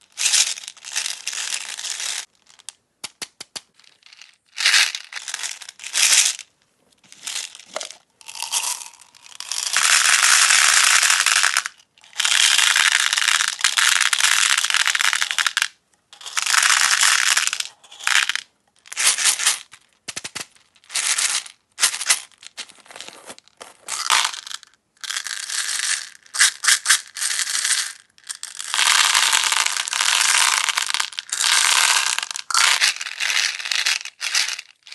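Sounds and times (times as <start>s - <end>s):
plastic beads pouring: 7.1s - 19.5s, 21.0s - 34.9s.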